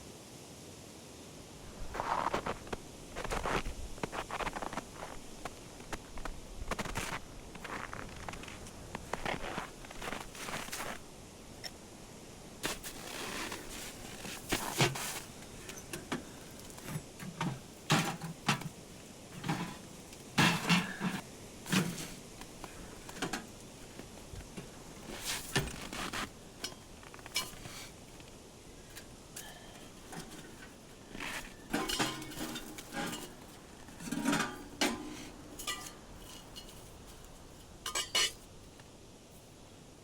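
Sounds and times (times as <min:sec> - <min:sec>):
camp gear clinking and knocking: 0:12.6 - 0:38.9.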